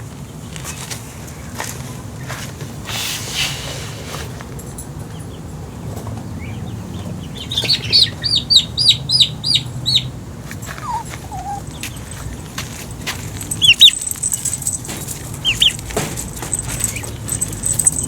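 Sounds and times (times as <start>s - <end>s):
bird chirping: 6.4s - 12.6s, 13.3s - 18.0s
rustling: 10.6s - 18.0s.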